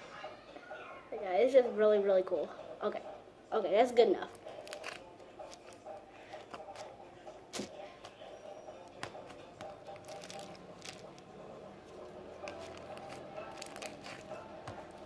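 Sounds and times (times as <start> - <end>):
faint background music: 0.0 - 15.0
slime squishing: 4.3 - 5.8, 9.0 - 15.0.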